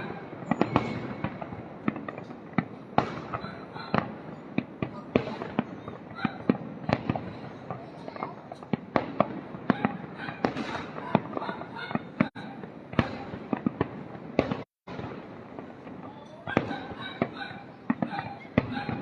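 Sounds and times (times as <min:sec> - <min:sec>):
fireworks banging and crackling: 0:00.0 - 0:19.0.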